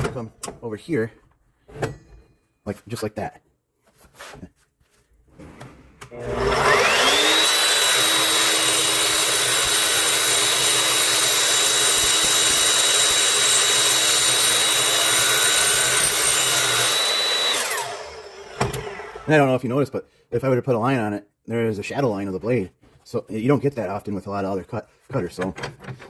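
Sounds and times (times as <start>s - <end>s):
chop saw motor whine: 6.2s - 19.3s
saw blade cutting steel: 6.2s - 19.3s.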